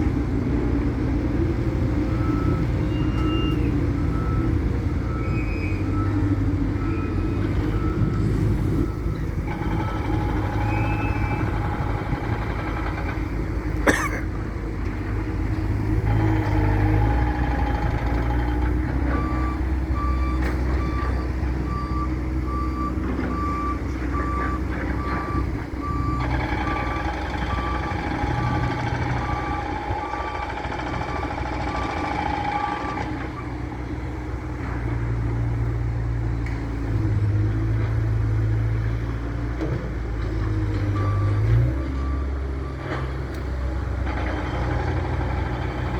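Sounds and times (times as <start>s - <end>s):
loader diesel engine running: 0.0s - 45.9s
reversing alarm beeping: 2.1s - 13.2s, 16.0s - 33.6s, 40.9s - 43.1s.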